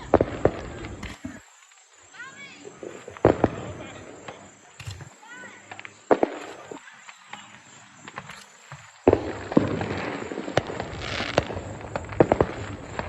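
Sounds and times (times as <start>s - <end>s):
fireworks crackling: 0.0s - 13.0s
fireworks popping: 0.0s - 13.0s
loud firework bang: 3.2s - 4.0s, 8.1s - 13.0s.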